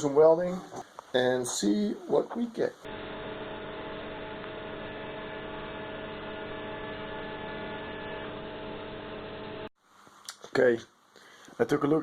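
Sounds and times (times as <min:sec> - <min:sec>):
faint hiss: 0:00.0 - 0:02.9
welding arc humming: 0:01.5 - 0:09.7.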